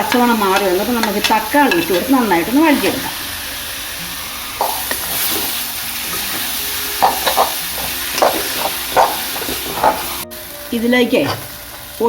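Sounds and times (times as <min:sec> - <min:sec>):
spoon knocking on pan: 0:00.0 - 0:02.6, 0:04.6 - 0:05.4, 0:06.1 - 0:10.2
spoon stirring and scraping pan: 0:00.0 - 0:03.2, 0:04.5 - 0:10.2
masala sizzling in hot oil: 0:00.0 - 0:12.0.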